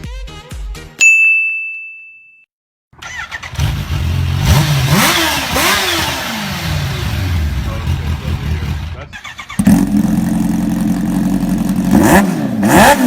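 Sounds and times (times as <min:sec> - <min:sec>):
bell-like ding: 0:01.0 - 0:02.5
motorcycle engine revving: 0:03.0 - 0:13.0.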